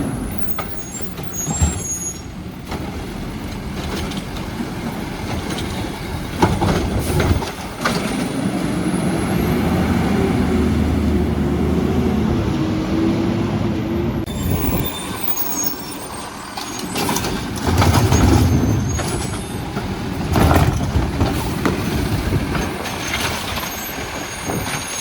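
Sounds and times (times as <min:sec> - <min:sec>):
garbage truck engine running: 0:00.0 - 0:25.0
metal arm and cart clanking: 0:14.3 - 0:25.0.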